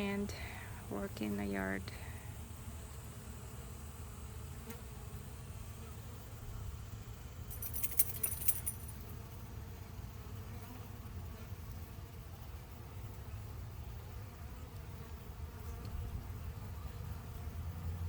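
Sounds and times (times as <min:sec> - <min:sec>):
high rattling jingle: 0:07.5 - 0:09.1.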